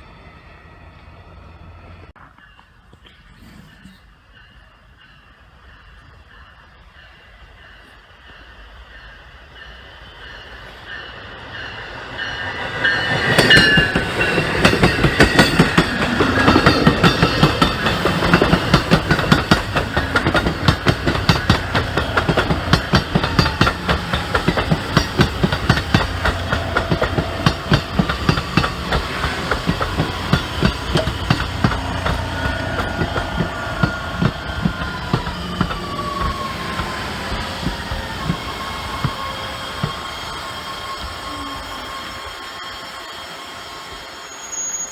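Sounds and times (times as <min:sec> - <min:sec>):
train wheels clattering over rail joints: 0:12.5 - 0:41.2.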